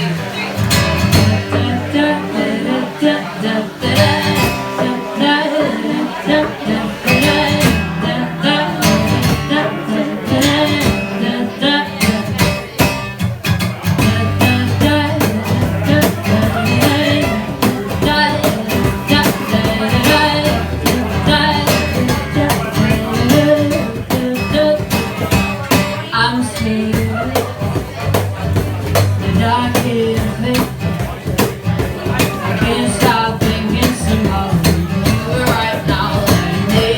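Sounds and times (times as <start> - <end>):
bass line: 0.0 - 36.9
electric guitar: 0.0 - 36.9
person singing: 1.1 - 12.8, 14.0 - 27.6, 29.2 - 31.4, 32.1 - 36.9
drum beat: 12.0 - 36.9.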